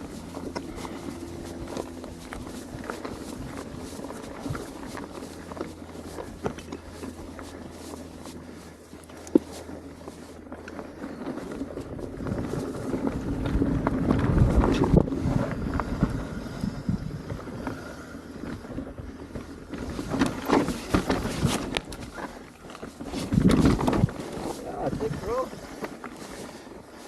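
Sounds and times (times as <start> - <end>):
bike tyres rumbling over rock: 0.0 - 27.0
wind on microphone: 12.0 - 19.3, 23.0 - 25.7
bike clicks and knocks: 17.2 - 24.5.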